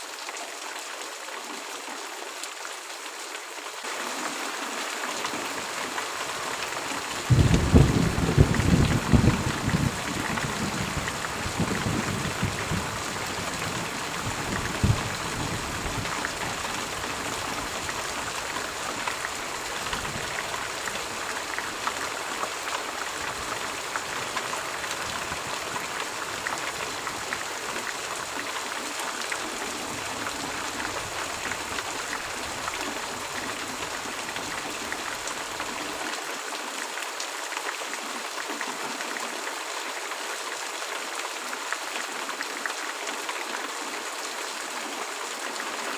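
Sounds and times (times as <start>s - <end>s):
steady rain: 0.0s - 45.9s
thunder rumble: 7.3s - 13.1s.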